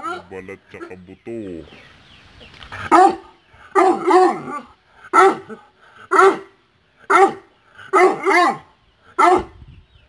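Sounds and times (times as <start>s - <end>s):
dog barking: 2.9s - 6.5s, 7.1s - 9.6s.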